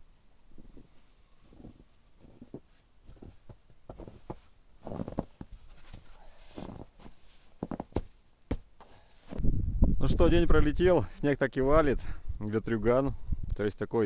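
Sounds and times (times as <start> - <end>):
scraping and crunching: 1.5 - 9.4.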